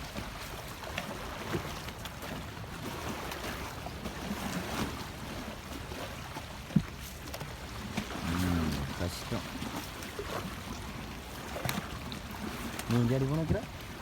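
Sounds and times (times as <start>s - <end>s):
water lapping and splashing: 0.0s - 14.0s.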